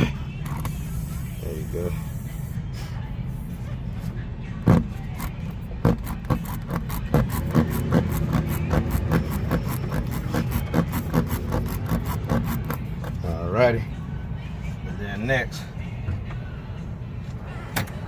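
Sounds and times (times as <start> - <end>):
rasp tool scraping rubber: 4.6 - 13.2.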